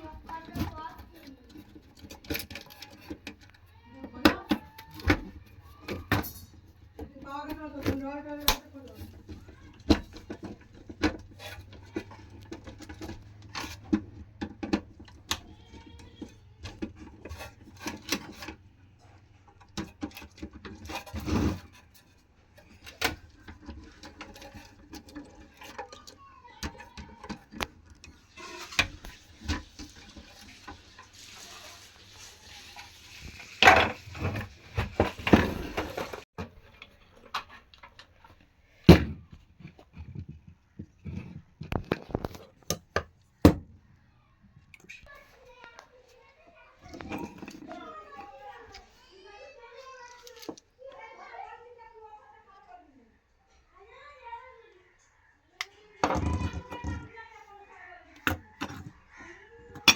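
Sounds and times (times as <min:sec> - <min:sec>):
metal tools clinking and knocking: 0:01.4 - 0:08.0.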